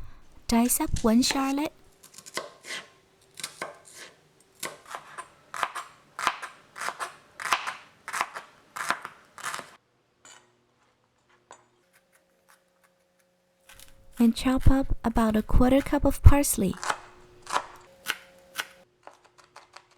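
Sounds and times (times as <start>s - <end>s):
knife chopping on cutting board: 0.9s - 9.7s, 16.8s - 18.8s.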